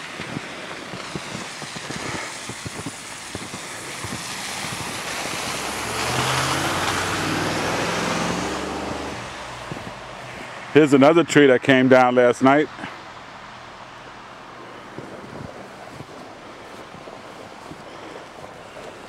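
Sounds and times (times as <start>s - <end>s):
footsteps crunching in snow: 0.0s - 10.6s, 14.4s - 19.0s
vehicle engine hum and tyre hiss: 0.0s - 19.0s.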